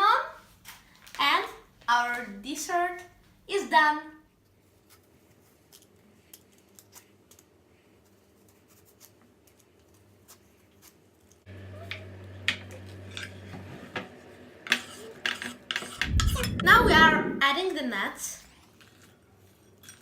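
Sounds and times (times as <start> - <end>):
steady low hum: 16.0 - 17.8.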